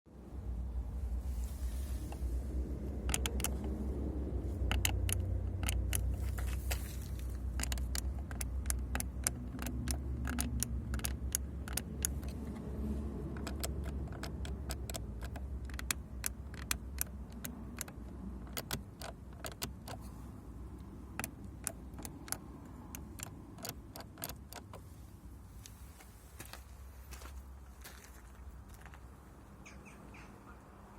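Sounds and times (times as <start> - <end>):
switches creaking: 2.0 - 12.6, 13.3 - 20.1
window switches clicking: 2.9 - 3.8, 13.3 - 20.0, 21.1 - 24.8.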